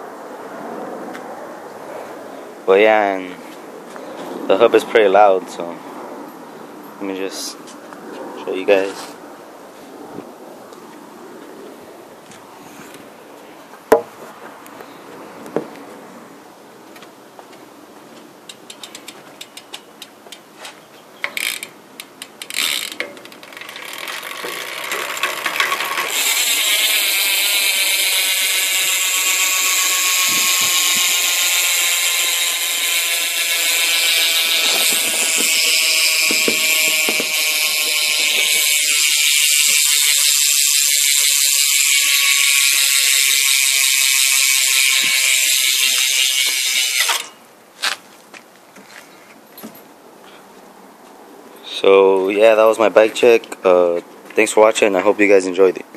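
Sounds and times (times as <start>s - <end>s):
bicycle hub clicks: 18.5s - 20.5s, 21.2s - 47.4s
bicycle hub ratcheting buzz: 18.5s - 20.5s, 21.2s - 47.4s.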